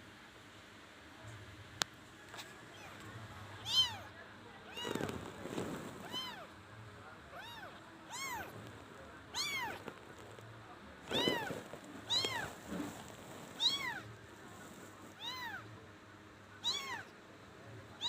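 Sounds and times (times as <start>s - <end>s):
kitten meowing: 3.6s - 4.1s, 4.7s - 5.2s, 6.0s - 6.5s, 7.4s - 8.6s, 9.3s - 9.9s, 11.0s - 12.6s, 13.6s - 14.1s, 15.2s - 15.6s, 16.6s - 17.1s.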